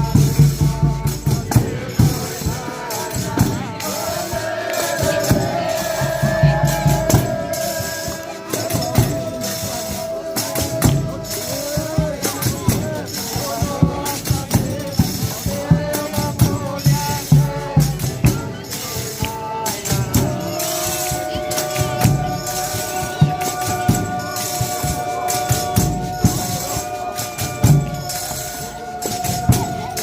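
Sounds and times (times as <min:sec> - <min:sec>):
steady drum beat: 0:00.0 - 0:30.0
tambourines and rattles shaking: 0:00.0 - 0:30.0.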